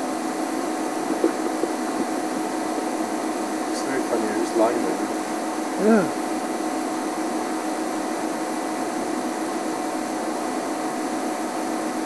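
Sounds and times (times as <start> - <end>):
steady hiss: 0.0 - 5.6
low even hum: 0.0 - 12.0.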